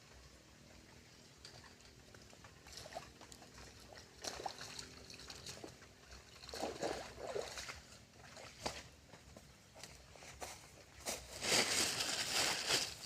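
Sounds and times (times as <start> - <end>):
water sloshing and trickling: 0.0 - 13.0
small water splashes: 0.6 - 9.2.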